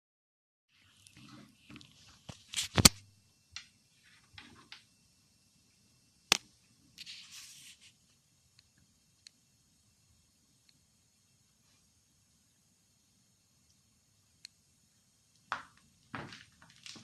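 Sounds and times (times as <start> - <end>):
rustling hiss: 3.5 - 14.2.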